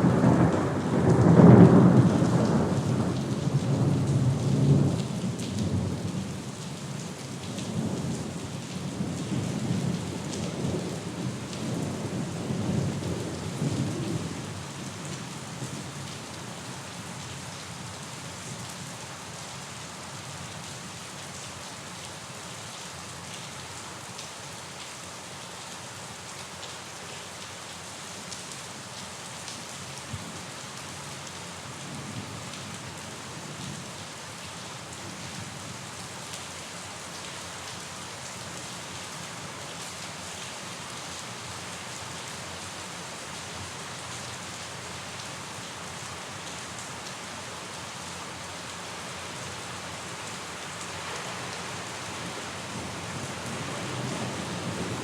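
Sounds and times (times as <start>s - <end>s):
rain pattering: 0.0s - 55.0s.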